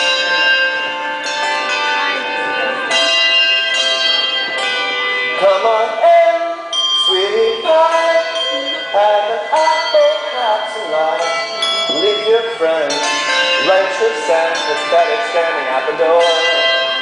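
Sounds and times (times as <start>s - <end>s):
hand bells ringing a melody: 0.0s - 17.0s
wavering voices singing: 5.3s - 16.8s.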